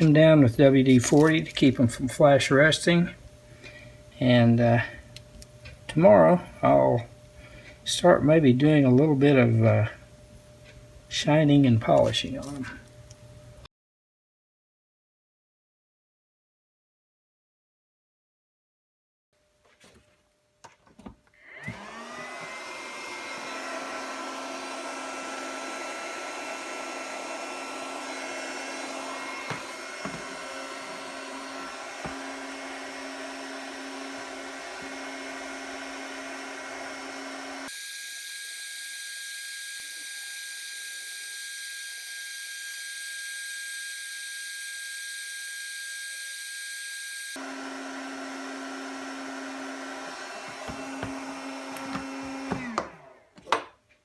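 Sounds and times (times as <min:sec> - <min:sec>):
polishing tool motor: 0:21.6 - 0:53.2
knocks of work on tool: 0:50.5 - 0:53.8.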